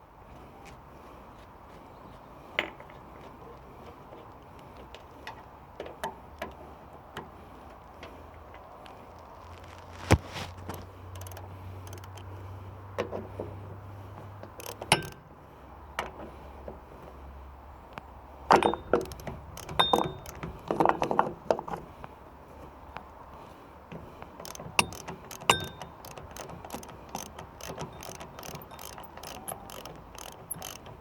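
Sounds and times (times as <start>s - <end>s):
metal clinks and knocks: 10.6s - 12.3s, 14.6s - 15.3s, 18.5s - 21.4s, 24.4s - 31.0s.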